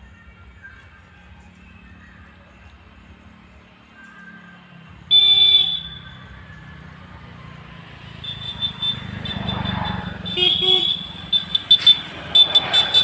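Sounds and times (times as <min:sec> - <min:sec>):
vehicle passing close by: 0:04.5 - 0:13.0
horn double beep: 0:05.1 - 0:06.2, 0:08.2 - 0:13.0
vehicle horn honking: 0:05.1 - 0:06.2, 0:08.2 - 0:13.0.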